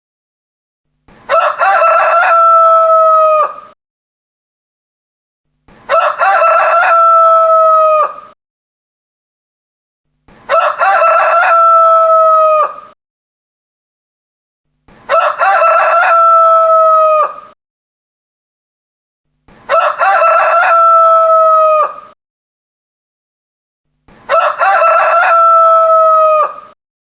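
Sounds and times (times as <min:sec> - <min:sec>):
rooster crowing: 0:01.3 - 0:03.8, 0:05.9 - 0:08.4, 0:10.5 - 0:13.0, 0:15.1 - 0:17.6, 0:19.7 - 0:22.2, 0:24.3 - 0:26.8.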